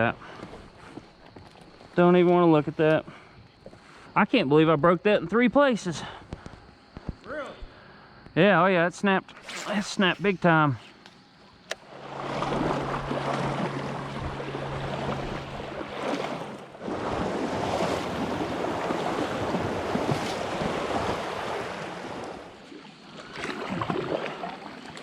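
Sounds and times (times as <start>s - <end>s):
wind: 0.0s - 25.0s
low steady hum: 2.6s - 22.8s
rushing water: 11.7s - 25.0s.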